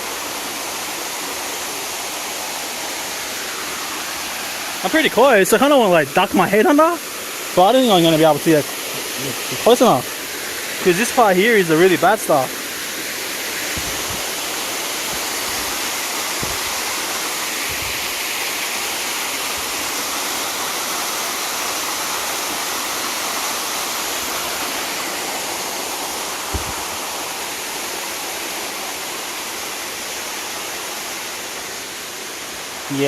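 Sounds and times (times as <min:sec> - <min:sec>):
waterfall rushing: 0:00.0 - 0:33.0
brief thump: 0:13.7 - 0:14.3, 0:26.5 - 0:27.0.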